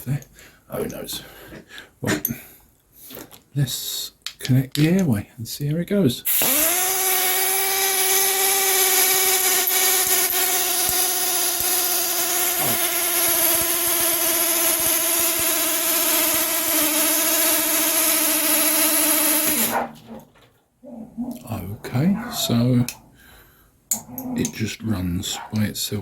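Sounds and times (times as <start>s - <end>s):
air ratchet whining: 6.3s - 19.8s
hissing air: 6.3s - 19.9s.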